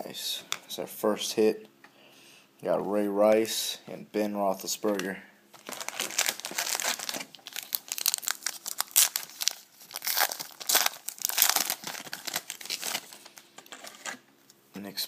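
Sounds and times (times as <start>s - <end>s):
foil wrapper tearing and crinkling: 5.6s - 14.2s.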